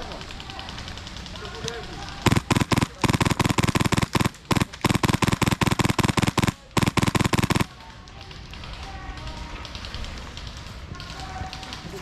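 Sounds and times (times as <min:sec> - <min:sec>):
airsoft gun firing full auto: 0:02.2 - 0:08.0.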